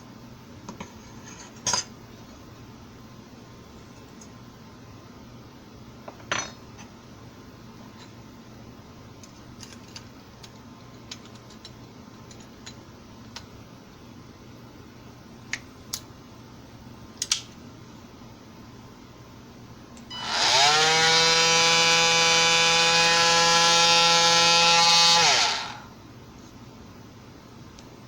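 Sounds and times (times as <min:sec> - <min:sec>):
oscillating multi-tool running: 0:20.1 - 0:25.9.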